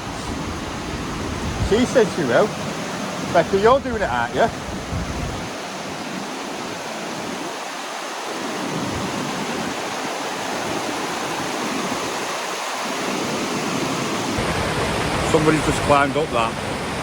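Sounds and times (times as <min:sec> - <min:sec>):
waterfall rushing: 0:09.2 - 0:17.0.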